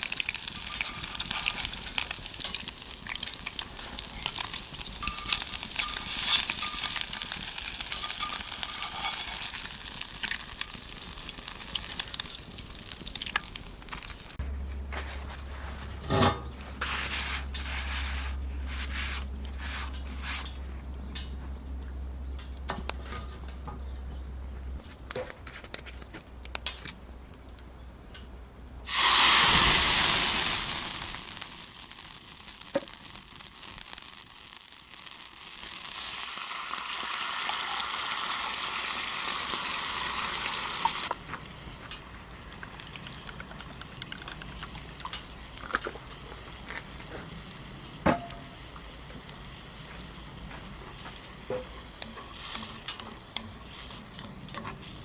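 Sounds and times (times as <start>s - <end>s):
food sizzling in a frying pan: 0.0s - 14.4s, 28.9s - 41.2s.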